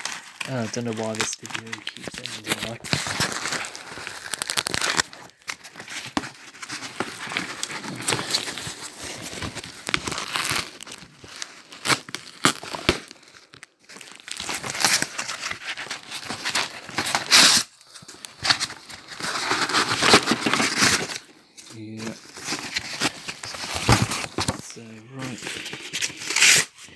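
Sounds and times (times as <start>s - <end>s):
packaging crinkling and tearing: 0.0s - 26.9s.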